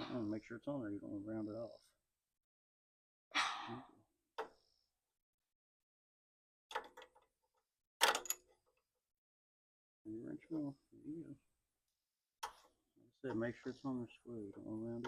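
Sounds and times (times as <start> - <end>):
person sighing: 3.4 - 3.9.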